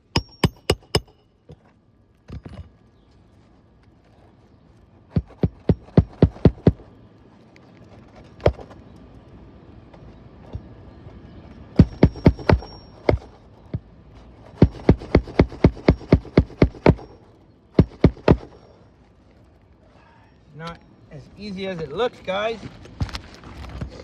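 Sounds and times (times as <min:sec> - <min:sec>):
hammer driving roofing nails: 0:00.0 - 0:01.2, 0:05.1 - 0:06.9, 0:11.8 - 0:13.9, 0:14.5 - 0:17.2, 0:17.8 - 0:18.7.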